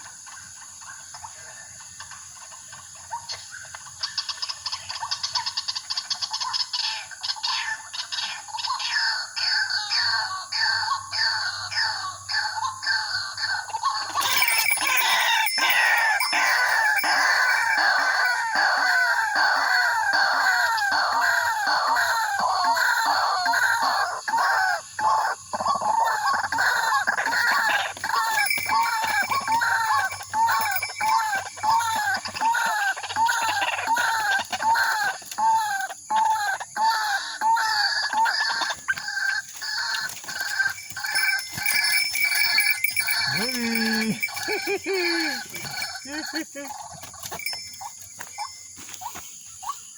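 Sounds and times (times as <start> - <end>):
waterhen calling: 13.0 - 49.8.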